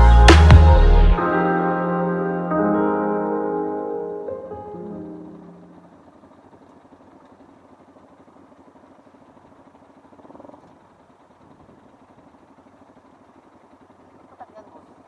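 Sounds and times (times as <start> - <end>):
motorcycle engine idling: 5.3 - 15.0.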